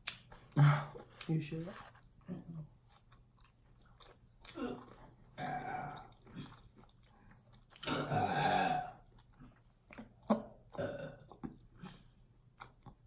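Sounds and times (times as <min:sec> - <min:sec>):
long loud burp: 0:05.4 - 0:06.0, 0:07.9 - 0:09.0, 0:10.8 - 0:11.2.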